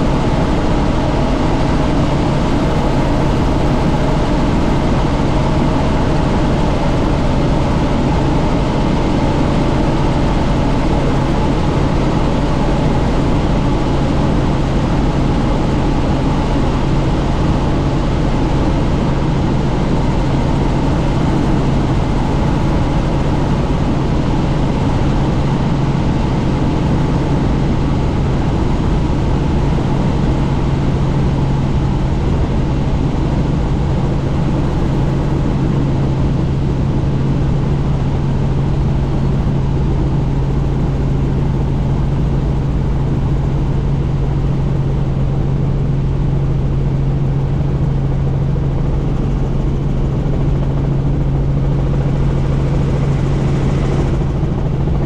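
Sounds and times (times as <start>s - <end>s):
helicopter rotor and turbine drone: 0.0s - 55.0s
wind rushing through cabin: 0.2s - 9.4s.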